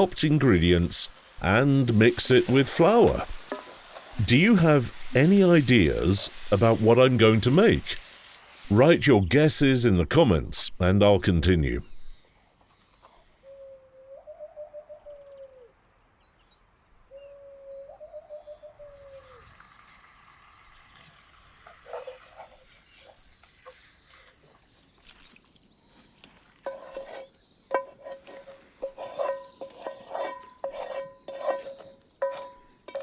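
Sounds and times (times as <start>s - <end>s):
bird long wavering calls: 13.4s - 15.7s, 17.1s - 25.2s.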